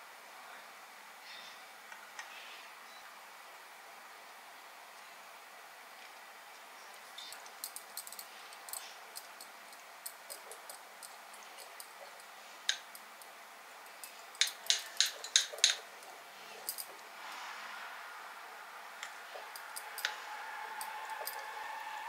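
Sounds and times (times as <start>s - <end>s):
small hard objects clicking: 13.9s - 15.8s.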